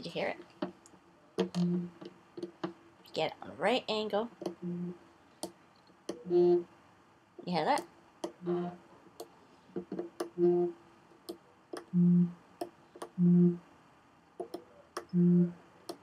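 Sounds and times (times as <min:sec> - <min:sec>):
phone vibrating against guitar: 0:01.6 - 0:02.0, 0:04.6 - 0:05.0, 0:06.2 - 0:06.7, 0:08.4 - 0:08.8, 0:10.4 - 0:10.8, 0:12.0 - 0:12.4, 0:13.2 - 0:13.6, 0:15.1 - 0:15.6.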